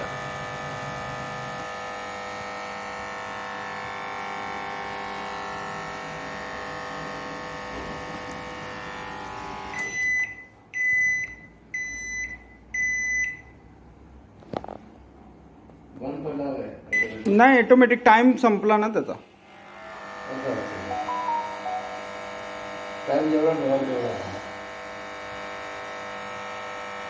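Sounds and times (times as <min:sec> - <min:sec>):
microwave oven buzzing hum: 0:00.0 - 0:15.4, 0:19.2 - 0:27.0
microwave oven beeps: 0:09.7 - 0:13.6, 0:16.9 - 0:17.4, 0:20.8 - 0:22.6.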